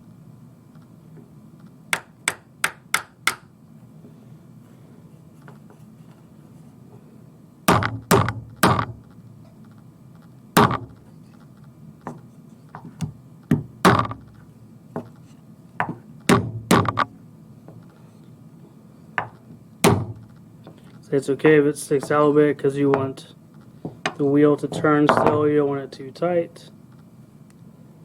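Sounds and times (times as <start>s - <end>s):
hammer knocking wooden peg: 1.9s - 3.4s, 7.7s - 9.0s, 10.6s - 11.0s, 12.8s - 14.3s, 15.8s - 17.1s, 19.2s - 20.2s, 23.9s - 25.4s.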